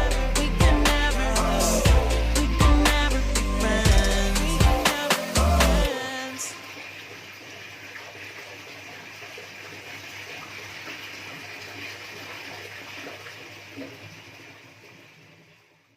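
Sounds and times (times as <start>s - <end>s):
rushing water-like noise: 4.5s - 14.8s.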